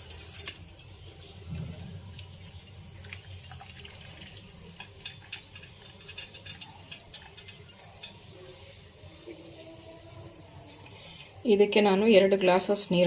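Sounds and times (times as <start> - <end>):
small clicks and drips: 0.0 - 8.5
water trickling through strainer: 0.0 - 11.0
low steady hum: 0.0 - 13.0.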